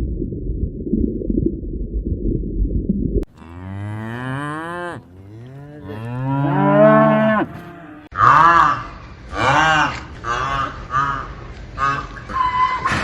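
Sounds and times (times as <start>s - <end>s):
low rumbling: 0.0s - 9.4s
cow mooing: 3.3s - 10.5s
animal honking call: 3.3s - 13.0s.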